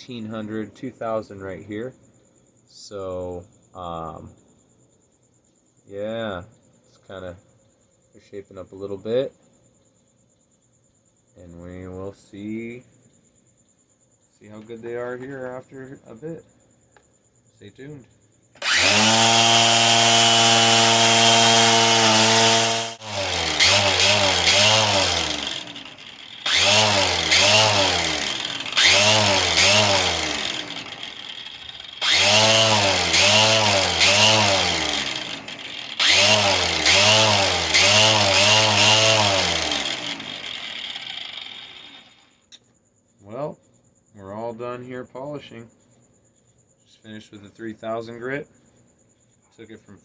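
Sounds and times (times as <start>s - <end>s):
grinder motor polishing stone: 18.6s - 42.2s.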